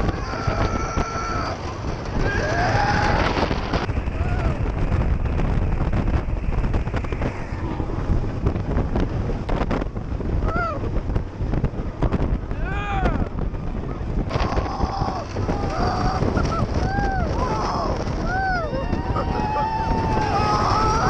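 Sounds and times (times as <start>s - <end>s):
riders screaming: 0.0s - 4.6s, 14.3s - 21.0s
roller coaster rumble: 0.0s - 21.0s
wind buffeting microphone: 0.0s - 21.0s.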